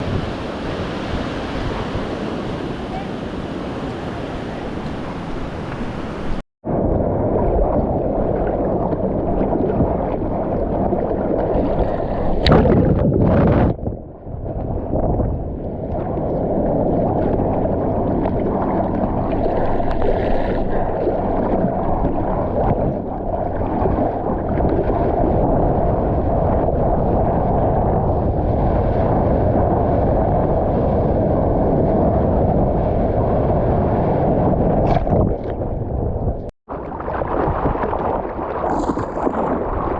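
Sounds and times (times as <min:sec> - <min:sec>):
wind buffeting camera: 0:00.0 - 0:39.9
sea water sloshing: 0:16.8 - 0:25.6, 0:36.7 - 0:39.9
water splash: 0:17.1 - 0:25.6, 0:34.8 - 0:35.8, 0:36.7 - 0:39.9.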